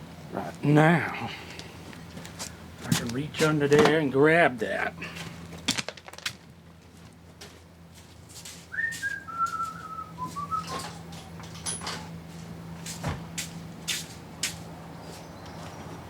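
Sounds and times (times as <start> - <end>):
person whistling a tune: 8.7 - 10.8
parts knocking and clinking: 10.7 - 12.1.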